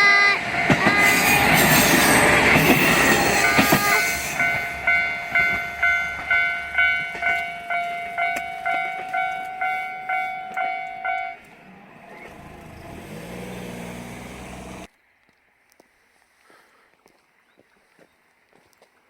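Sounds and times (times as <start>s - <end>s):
level crossing bell ringing: 0.1s - 11.6s.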